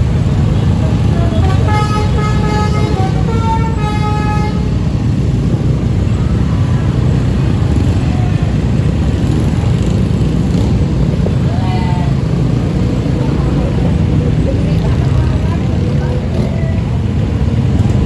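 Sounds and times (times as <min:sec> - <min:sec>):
engine and traffic rumble: 0:00.0 - 0:18.0
bus horn melody: 0:01.1 - 0:04.8.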